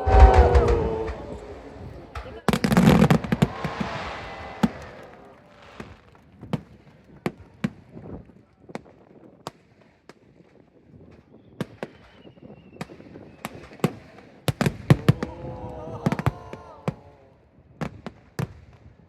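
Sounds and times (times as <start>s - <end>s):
fireworks cracks: 0.0s - 6.2s
faint thin whistle: 11.3s - 13.6s.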